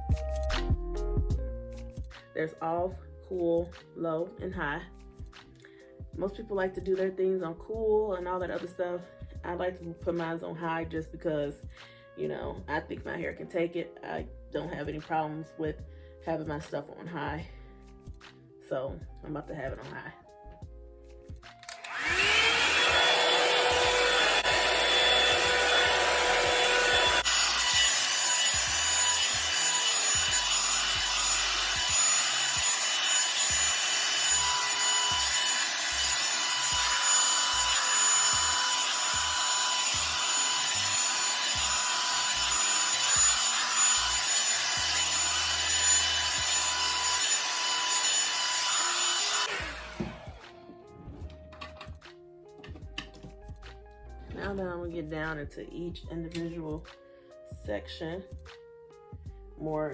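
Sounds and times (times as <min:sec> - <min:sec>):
hair dryer motor whine and air: 0:21.6 - 0:50.7.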